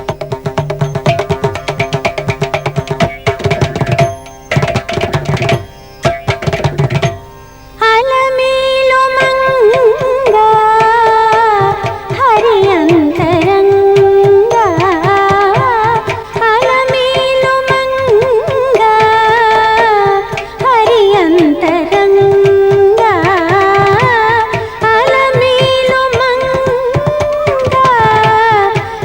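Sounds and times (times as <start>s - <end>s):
rapid hand-drum strokes: 0.0s - 7.3s, 9.2s - 29.0s.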